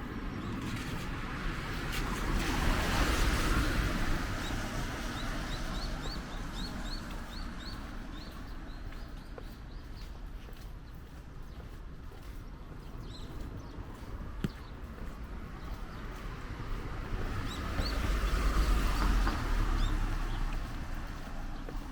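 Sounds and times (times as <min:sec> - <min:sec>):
vehicle tyres hissing on wet road: 0:01.9 - 0:07.2.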